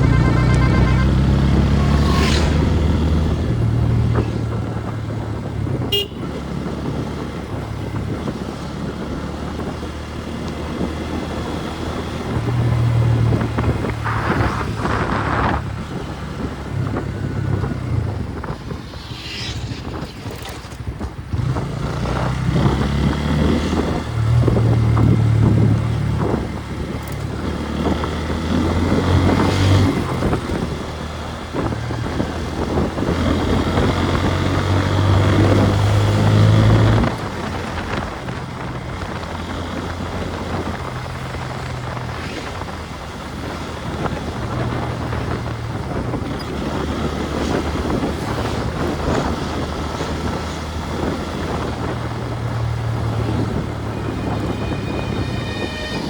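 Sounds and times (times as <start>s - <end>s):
vehicle horn: 0.0s - 2.9s, 5.8s - 6.6s, 53.2s - 56.0s
road traffic: 0.0s - 56.0s.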